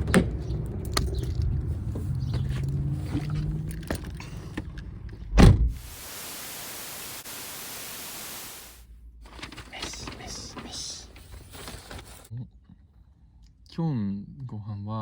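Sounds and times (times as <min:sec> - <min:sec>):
even hiss: 0:05.8 - 0:08.8.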